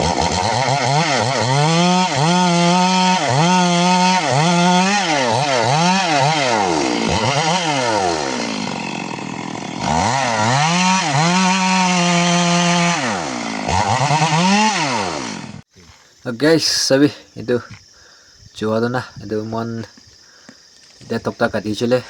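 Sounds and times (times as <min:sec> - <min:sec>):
chainsaw cutting wood: 0:00.0 - 0:16.1, 0:19.8 - 0:21.5.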